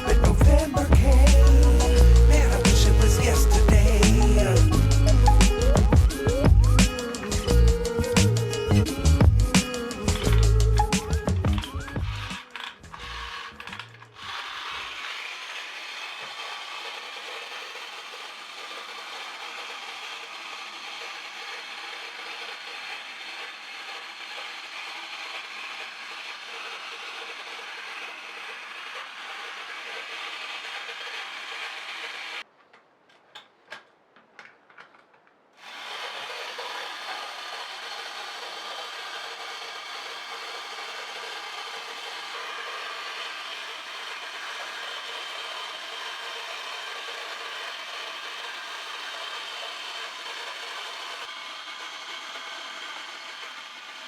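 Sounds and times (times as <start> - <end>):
clockwork gear rattle: 0.0 - 32.4, 35.6 - 54.0.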